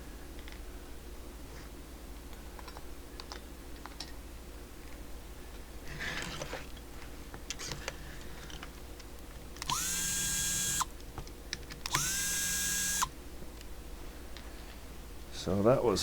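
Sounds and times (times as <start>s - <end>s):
power screwdriver whining: 9.6s - 10.9s, 11.8s - 13.1s
small parts clicking: 9.6s - 10.9s, 11.6s - 13.1s.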